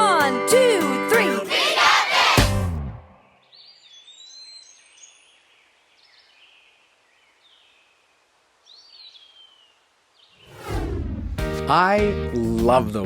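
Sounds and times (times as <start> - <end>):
faint birdsong whistles: 3.2 - 10.7
quiet outdoor hiss: 3.3 - 10.8.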